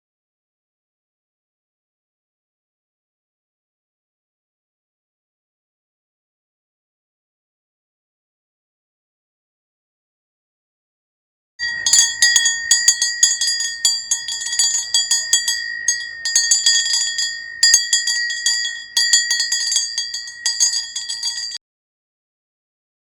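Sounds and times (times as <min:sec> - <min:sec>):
hand bell ringing: 0:11.6 - 0:21.6.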